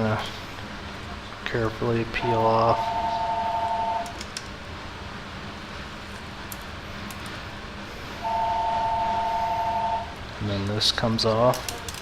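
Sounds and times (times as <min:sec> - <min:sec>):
constant hiss: 0:00.0 - 0:12.0
two-pitch steady tone: 0:02.2 - 0:04.2, 0:08.2 - 0:10.2.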